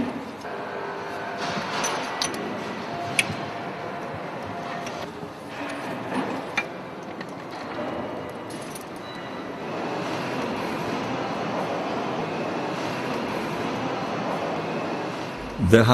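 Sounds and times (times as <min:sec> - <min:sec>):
engine room noise: 0:09.6 - 0:15.9.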